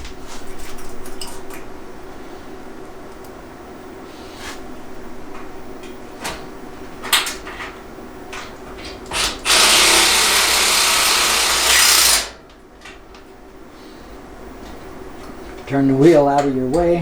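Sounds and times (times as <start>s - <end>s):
power drill running: 9.1s - 12.4s.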